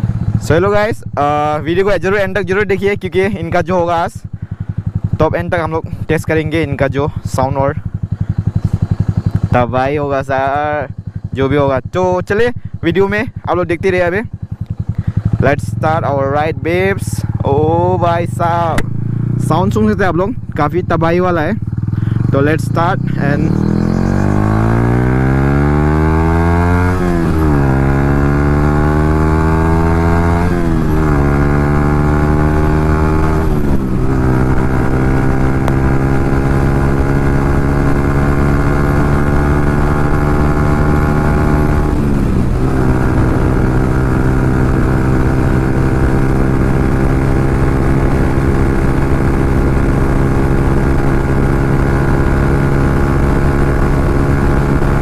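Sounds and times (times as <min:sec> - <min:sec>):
motorcycle engine accelerating: 0:00.0 - 0:55.0.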